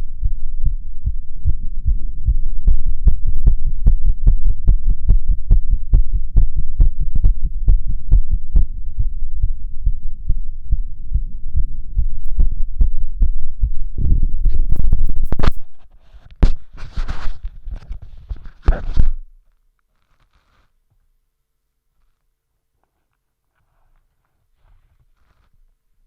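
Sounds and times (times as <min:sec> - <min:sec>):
fast heartbeat through stethoscope: 0:00.2 - 0:15.7
rustling: 0:14.5 - 0:21.1, 0:21.9 - 0:25.8.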